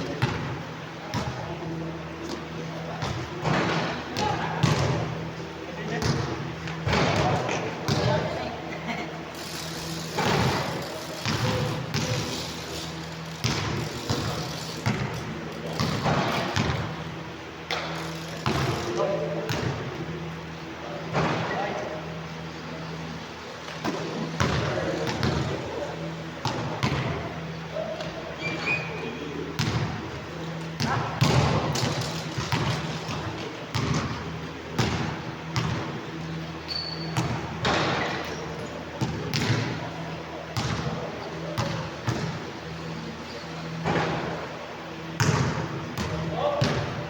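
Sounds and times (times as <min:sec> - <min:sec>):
steady low hum: 0:00.0 - 0:47.0
basketball bouncing on court: 0:00.2 - 0:01.4, 0:03.0 - 0:05.1, 0:06.0 - 0:08.3, 0:09.6 - 0:17.0, 0:17.6 - 0:19.9, 0:23.8 - 0:25.6, 0:26.4 - 0:27.4, 0:29.6 - 0:36.0, 0:36.8 - 0:38.4, 0:39.0 - 0:39.8, 0:40.6 - 0:41.0, 0:41.6 - 0:42.4, 0:45.1 - 0:47.0
shoe squeak: 0:28.4 - 0:29.2, 0:36.7 - 0:37.2.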